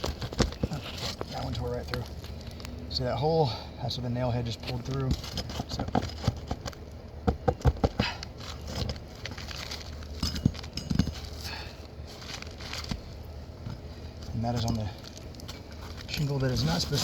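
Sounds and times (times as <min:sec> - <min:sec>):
hollow knocks on shingle roof: 0:07.2 - 0:08.2.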